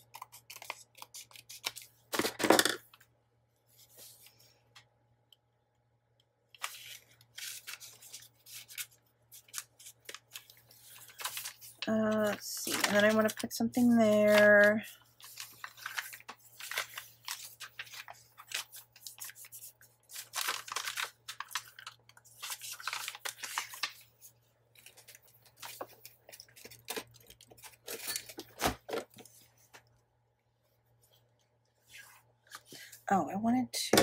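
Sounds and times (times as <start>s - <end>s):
paper rustling and tearing: 6.6s - 24.2s.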